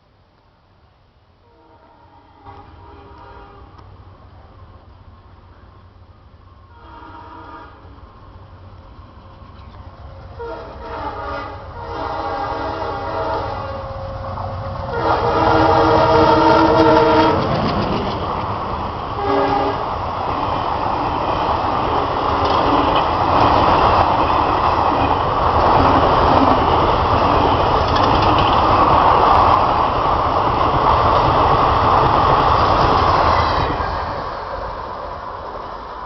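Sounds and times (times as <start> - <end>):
locomotive horn: 1.4 - 3.8, 6.7 - 7.9, 10.4 - 17.6, 19.2 - 19.9
train rushing past: 1.4 - 36.0
clickety-clack of coaches: 16.0 - 18.6, 20.3 - 33.8.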